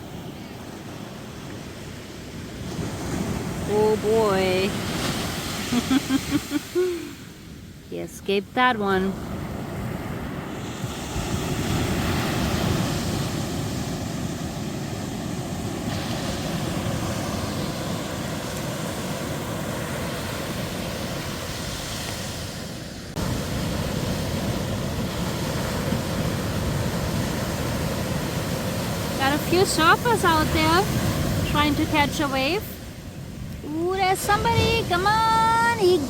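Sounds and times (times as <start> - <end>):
ocean surf on sandy beach: 0.0 - 36.0
wind rumbling on microphone: 9.1 - 36.0.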